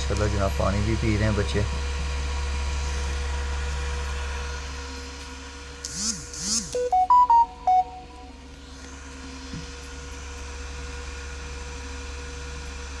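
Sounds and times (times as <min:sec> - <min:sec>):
short electronic chime: 0:06.8 - 0:08.4.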